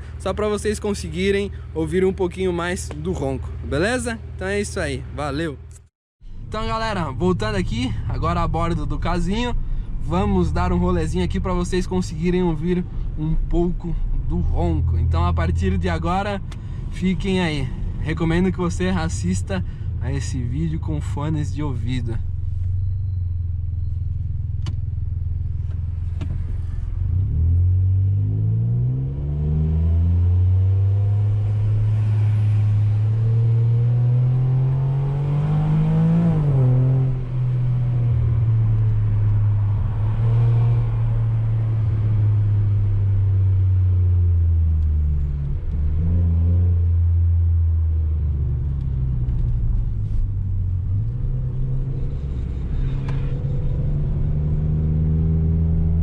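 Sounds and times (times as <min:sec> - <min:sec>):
car engine revving: 0:24.6 - 0:56.0.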